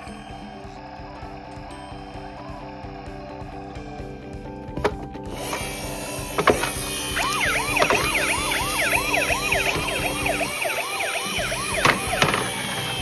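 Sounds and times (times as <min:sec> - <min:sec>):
toy siren yelping: 0:05.4 - 0:13.0.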